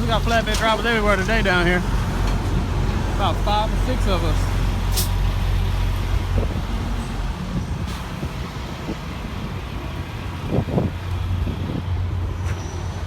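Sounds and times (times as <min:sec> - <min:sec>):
diesel truck engine humming: 0:00.0 - 0:13.0.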